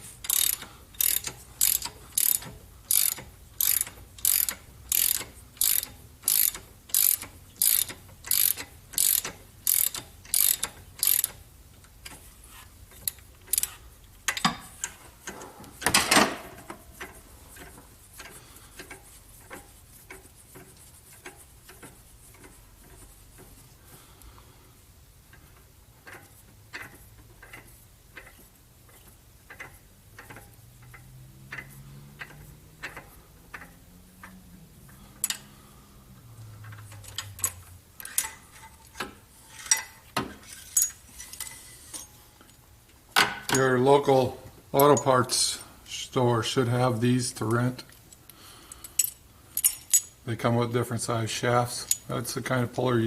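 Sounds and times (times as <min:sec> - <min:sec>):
ratchet wrench clicking: 0:00.2 - 0:12.3, 0:12.9 - 0:15.0, 0:26.0 - 0:35.5, 0:36.6 - 0:39.9.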